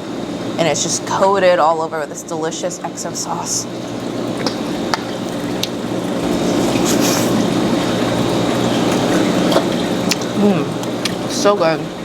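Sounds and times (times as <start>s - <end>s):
wet chewing: 5.3s - 11.3s.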